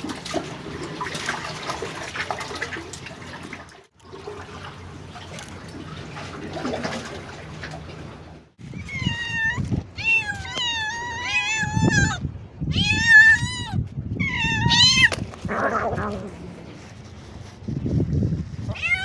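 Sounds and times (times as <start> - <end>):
cat meowing: 8.7 - 16.4, 18.7 - 19.0.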